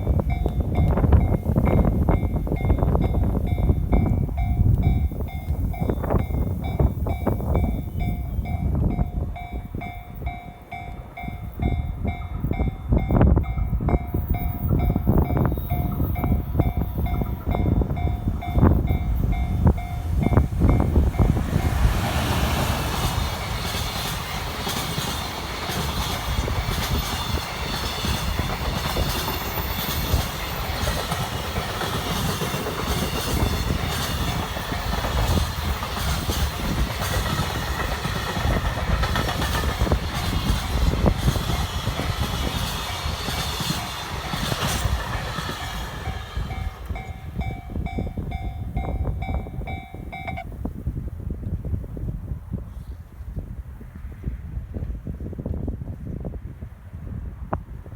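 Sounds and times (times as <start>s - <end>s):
level-crossing warning bell: 0.0s - 50.7s
rush of passing train: 0.0s - 57.9s
train wheels knocking on rail joints: 11.6s - 50.4s.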